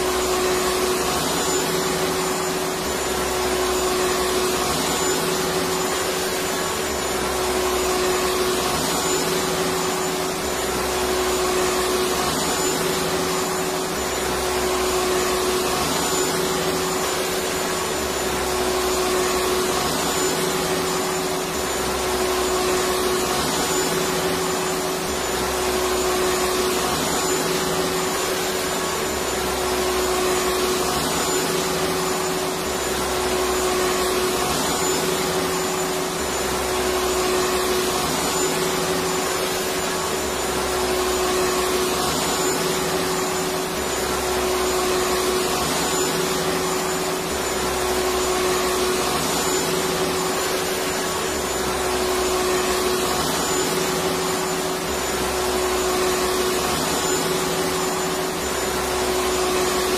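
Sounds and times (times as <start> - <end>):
vacuum cleaner running: 0.0 - 59.9.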